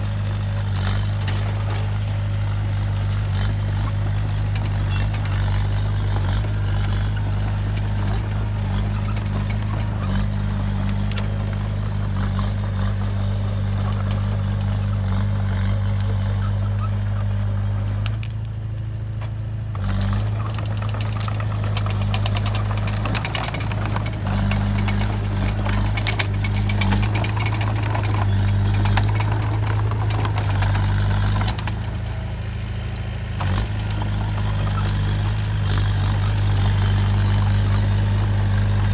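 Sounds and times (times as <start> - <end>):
diesel engine running: 0.0 - 38.9
clattering and rattling: 20.0 - 32.2.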